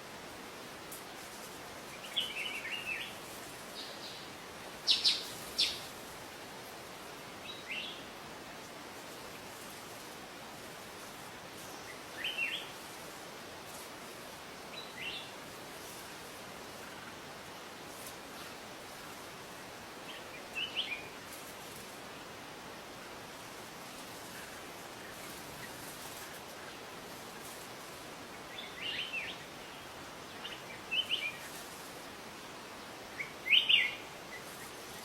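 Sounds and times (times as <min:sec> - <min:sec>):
steady background hiss: 0:00.0 - 0:35.0
bird chirping: 0:02.0 - 0:05.9, 0:28.5 - 0:31.6, 0:33.2 - 0:34.7.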